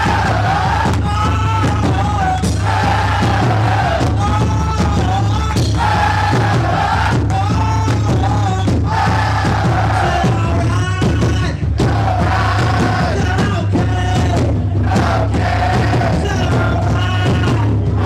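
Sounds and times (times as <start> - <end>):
rock band playing: 0.0 - 18.0.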